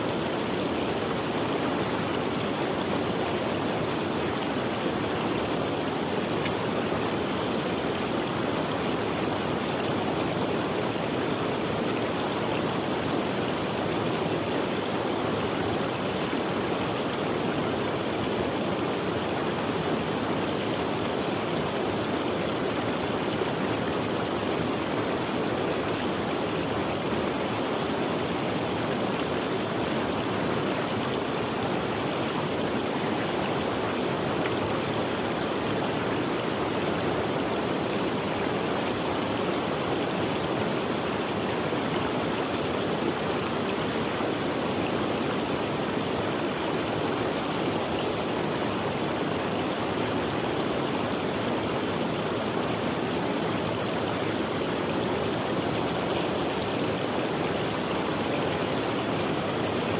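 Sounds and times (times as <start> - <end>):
stream of running water: 0.0 - 59.9.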